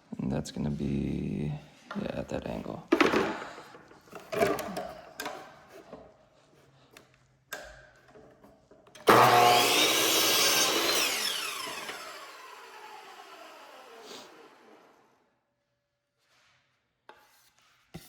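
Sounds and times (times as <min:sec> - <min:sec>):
miter saw cutting wood: 0:09.0 - 0:15.1
saw blade whining down: 0:09.0 - 0:15.1.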